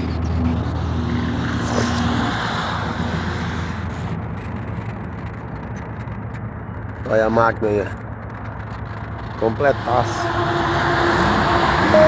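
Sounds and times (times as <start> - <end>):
truck diesel engine running: 9.5 - 12.0.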